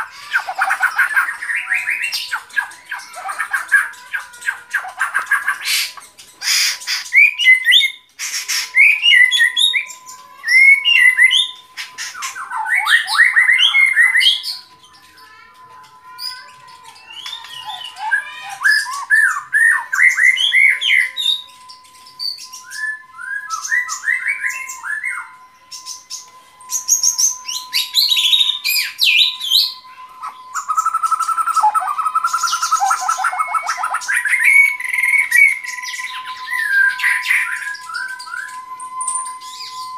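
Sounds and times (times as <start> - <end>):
bird singing: 0.0 - 39.9
faint steady high tone: 0.0 - 39.9.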